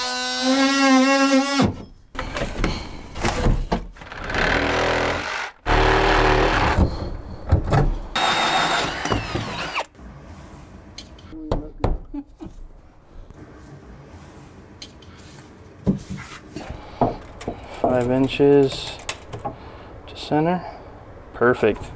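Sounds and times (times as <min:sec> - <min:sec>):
power tool cutting drywall: 0:00.0 - 0:01.7, 0:04.0 - 0:06.9, 0:08.2 - 0:09.9.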